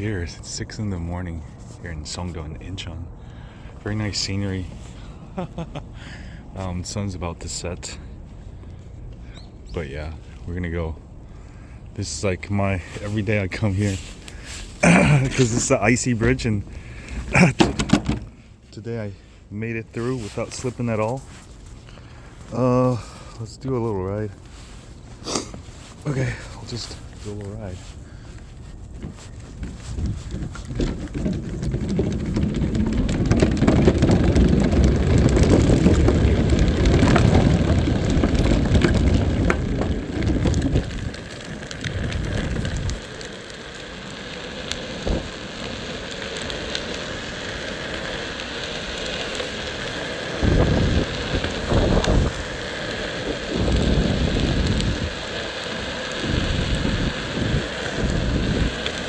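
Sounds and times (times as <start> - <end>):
skateboard rolling rumble: 0.0 - 59.0
wind buffeting microphone: 25.1 - 43.3, 44.9 - 45.5, 50.2 - 59.0.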